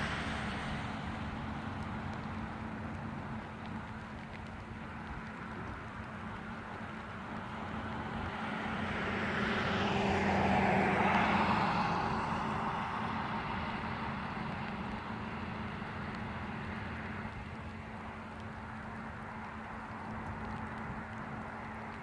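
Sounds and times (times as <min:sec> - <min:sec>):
vehicle passing by: 0:00.0 - 0:02.3, 0:07.4 - 0:17.3.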